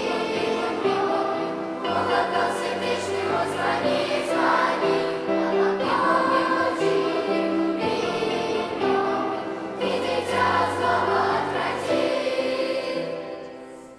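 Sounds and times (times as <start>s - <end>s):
children's choir singing: 0.0s - 13.9s.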